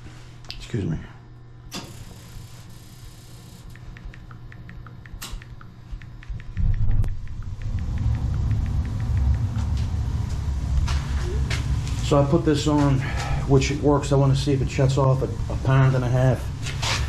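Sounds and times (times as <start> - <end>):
sharp clicks: 3.6 - 9.8
spark igniter ticking: 3.6 - 10.4
gas burner rumbling: 6.9 - 17.0.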